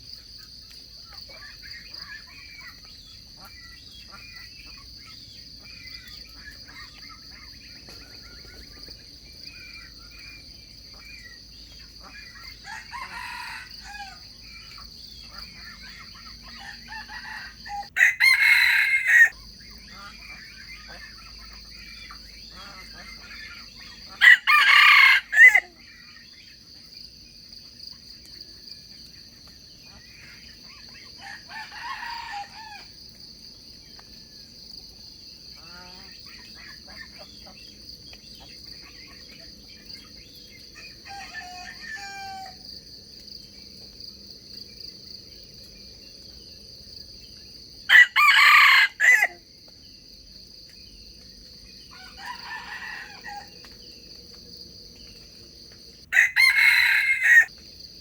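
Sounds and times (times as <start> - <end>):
roosters crowing: 12.5 - 14.3, 16.4 - 19.4, 23.9 - 25.8, 31.2 - 33.0, 40.8 - 42.7, 47.9 - 49.4, 51.8 - 53.6, 56.1 - 57.5.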